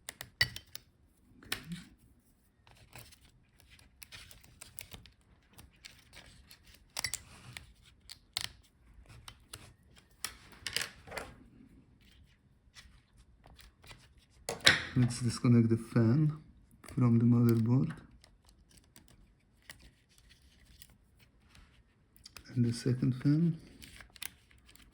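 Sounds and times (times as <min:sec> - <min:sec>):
small clicks and scrapes in laptop: 0:01.5 - 0:10.6, 0:18.1 - 0:22.5, 0:23.2 - 0:24.9.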